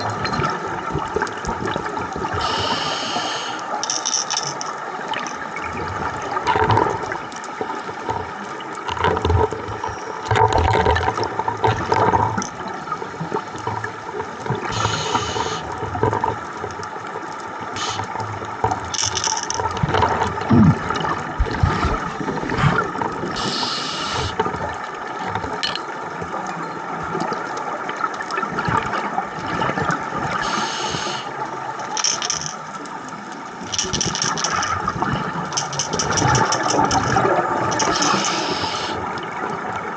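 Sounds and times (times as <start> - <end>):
steady underwater hum: 0.0 - 39.9
bubbling regulator hiss: 2.2 - 4.0, 14.6 - 15.8, 17.7 - 18.2, 21.4 - 24.4, 30.3 - 31.4, 35.6 - 39.1.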